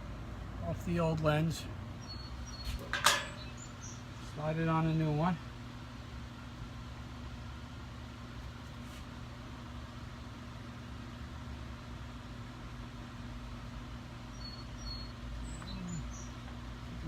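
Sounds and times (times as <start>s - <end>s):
low electrical hum: 0.0s - 17.0s
faint high chirps: 14.3s - 16.4s.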